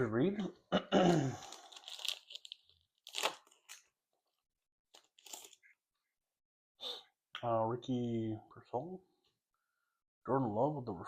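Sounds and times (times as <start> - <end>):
trading cards rustling: 1.4 - 3.9.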